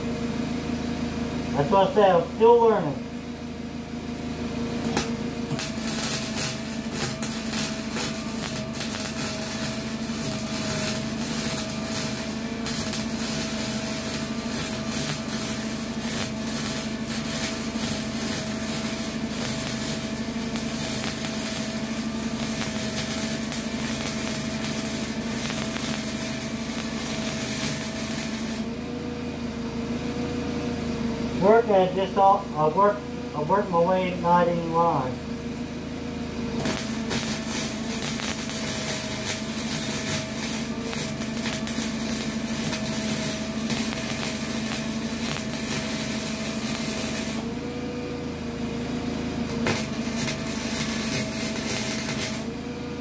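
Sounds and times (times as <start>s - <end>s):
welding arc crackling and popping: 4.8s - 28.9s, 36.5s - 47.8s, 49.4s - 53.0s.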